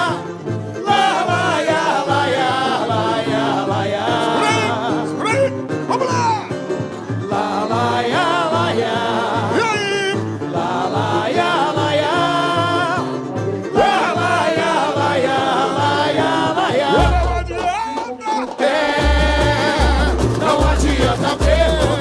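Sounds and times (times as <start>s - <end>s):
lead singer with vibrato: 0.0s - 6.4s, 7.2s - 22.0s
samba drum section: 0.0s - 22.0s
low bass drum beat: 16.9s - 18.0s, 18.9s - 22.0s.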